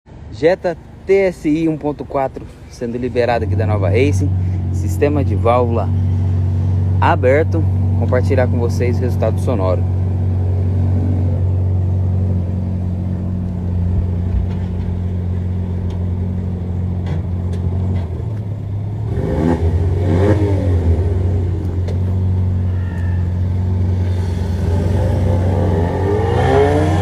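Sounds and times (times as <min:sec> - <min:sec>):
car engine idling and revving: 0:00.8 - 0:27.0.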